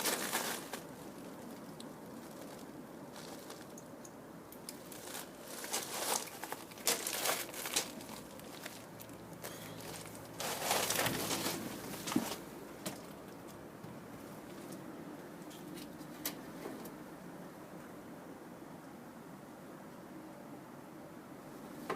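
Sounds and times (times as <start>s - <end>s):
rustling and crinkling of parts: 0.0s - 3.8s, 4.6s - 13.6s.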